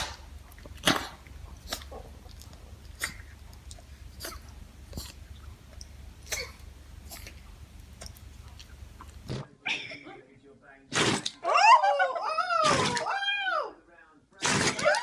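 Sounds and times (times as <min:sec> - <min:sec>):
dog sneezing: 0:04.1 - 0:05.2, 0:06.2 - 0:07.4.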